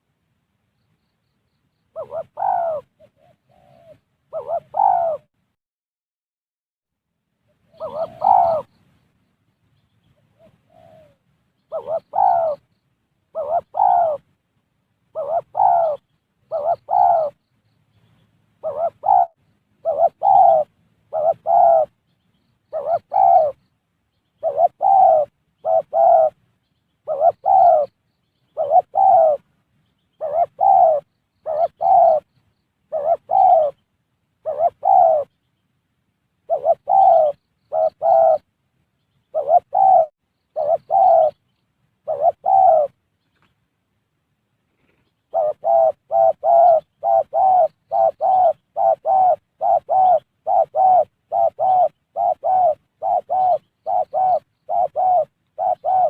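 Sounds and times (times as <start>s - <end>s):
dove cooing: 1.9s - 5.3s, 7.6s - 8.8s, 10.2s - 14.3s, 15.1s - 17.5s, 18.1s - 23.7s, 24.3s - 26.4s, 27.0s - 29.5s, 30.1s - 33.8s, 34.4s - 35.4s, 36.4s - 38.5s, 39.2s - 43.5s, 44.7s - 56.0s.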